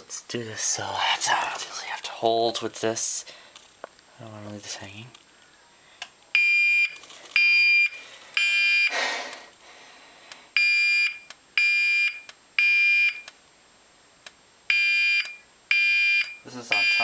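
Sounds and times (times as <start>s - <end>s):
fire alarm beeps: 6.3s - 8.9s, 10.6s - 13.3s, 14.7s - 17.0s.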